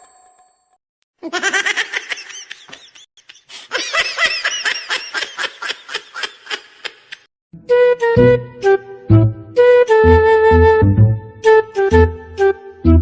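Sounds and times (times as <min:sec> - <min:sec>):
person laughing: 0:01.2 - 0:07.2.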